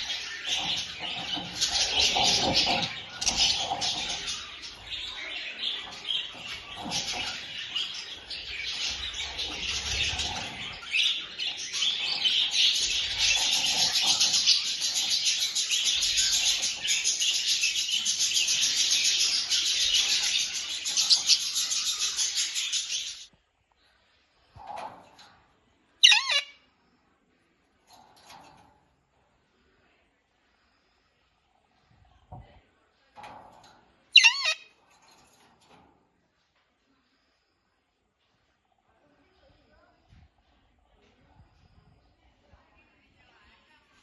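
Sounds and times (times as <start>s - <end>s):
small birds chirping: 0.0s - 25.3s, 25.9s - 26.6s, 29.4s - 35.9s.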